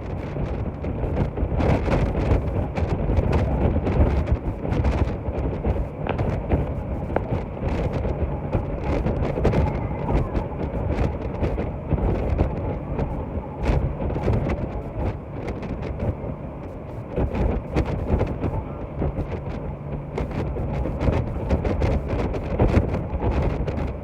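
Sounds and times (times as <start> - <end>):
boat engine rumble: 0.0 - 24.0
wind buffeting microphone: 0.0 - 24.0.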